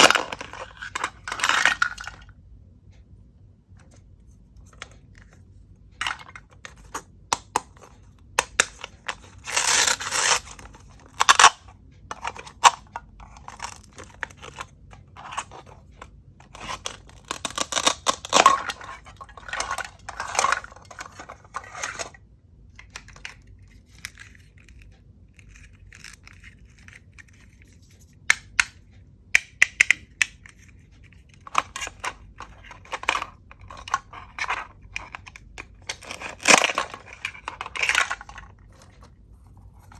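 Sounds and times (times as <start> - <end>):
plastic toy food tearing apart: 8.4 - 14.6, 16.5 - 22.1, 31.5 - 39.0.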